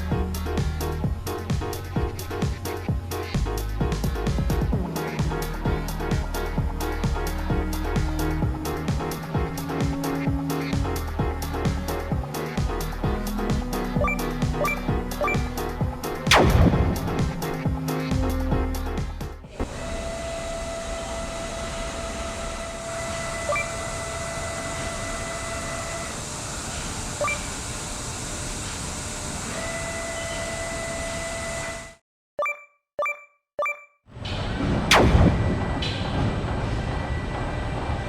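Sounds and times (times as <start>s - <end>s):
short beeps: 14.0s - 15.5s, 23.5s - 23.8s, 27.2s - 27.5s, 32.4s - 34.0s
machining center cutting hiss: 19.5s - 29.6s
thin machine whine: 19.5s - 32.0s.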